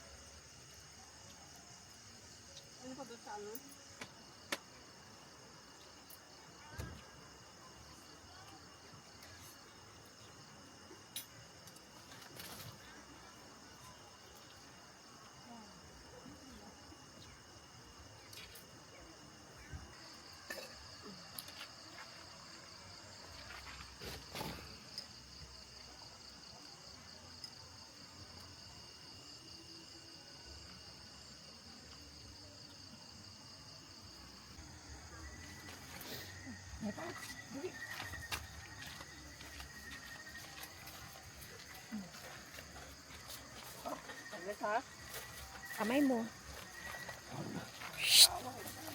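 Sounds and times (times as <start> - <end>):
crickets chirping: 0.0 - 48.9
insect chorus trilling: 34.0 - 48.9.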